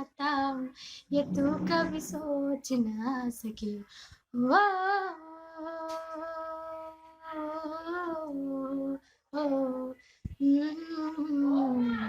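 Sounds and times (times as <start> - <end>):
girl singing unaccompanied: 0.0 - 12.0.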